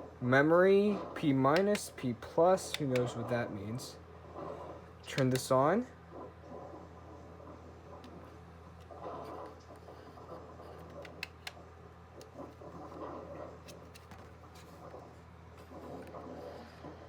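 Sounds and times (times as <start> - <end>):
steady low hum: 0.0 - 17.0
handling of small radio: 10.6 - 11.6, 13.6 - 15.1.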